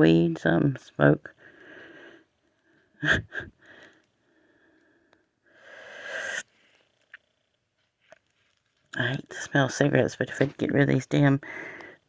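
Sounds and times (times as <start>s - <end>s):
person breathing: 1.4s - 7.0s, 11.4s - 12.0s.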